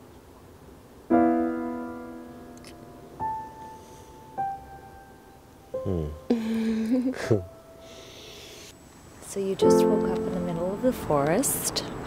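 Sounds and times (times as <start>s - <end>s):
sparse piano notes: 1.1s - 8.3s, 9.6s - 11.2s.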